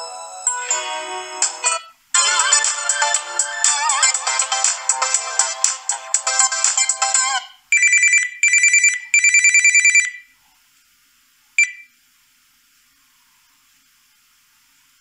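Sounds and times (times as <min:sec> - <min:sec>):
melodic ringtone: 0:00.0 - 0:10.2
telephone bell ringing: 0:07.7 - 0:10.2.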